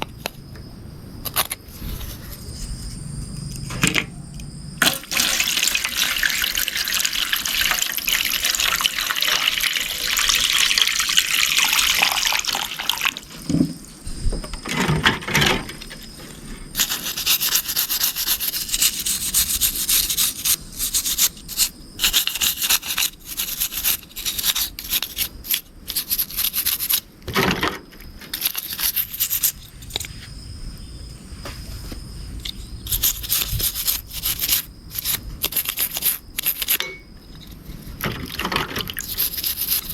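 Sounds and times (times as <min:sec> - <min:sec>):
brush scrubbing: 0:04.8 - 0:13.7, 0:16.8 - 0:25.1, 0:32.9 - 0:36.8, 0:38.8 - 0:39.9
water spraying: 0:04.8 - 0:13.9.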